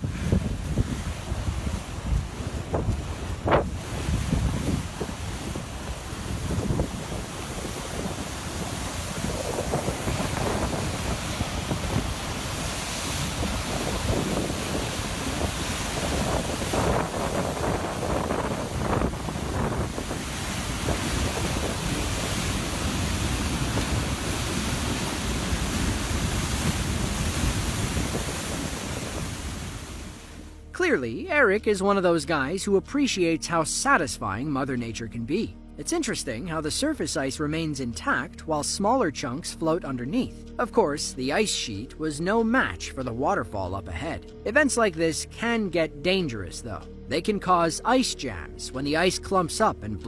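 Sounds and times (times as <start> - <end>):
wind buffeting microphone: 0.0 - 30.5
river water roaring: 0.0 - 30.7.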